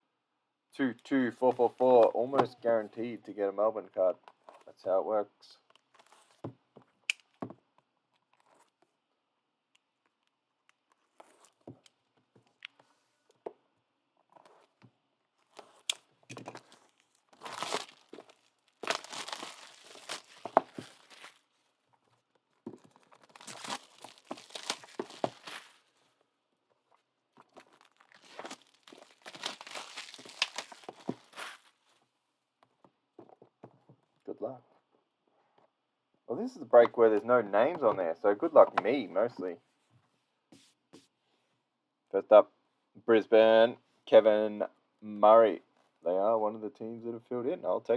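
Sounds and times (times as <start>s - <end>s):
plastic wrapping tearing and crinkling: 15.5s - 21.6s, 23.0s - 26.0s, 27.5s - 31.9s.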